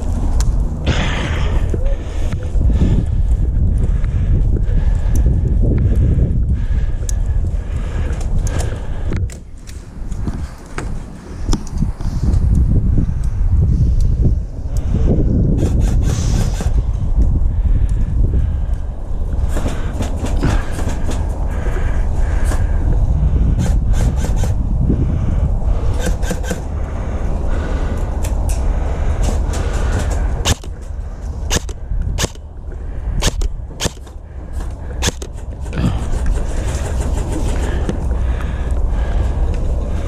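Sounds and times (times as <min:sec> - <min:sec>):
wind rumble on microphone: 0:00.0 - 0:40.0
sharp clicks and knocks: 0:28.2 - 0:32.5, 0:33.2 - 0:38.1.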